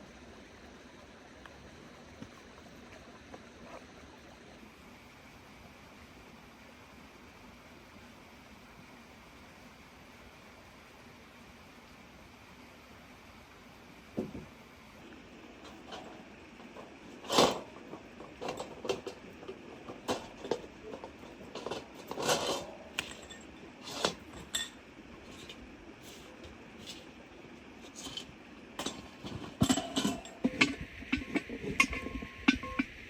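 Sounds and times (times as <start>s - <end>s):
metal cookware clinking: 27.9s - 32.9s.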